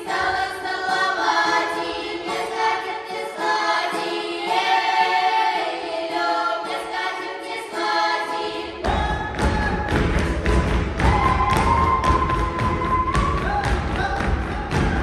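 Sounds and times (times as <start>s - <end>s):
folk choir singing: 0.0s - 15.0s
heavy thudding beats: 8.8s - 15.0s.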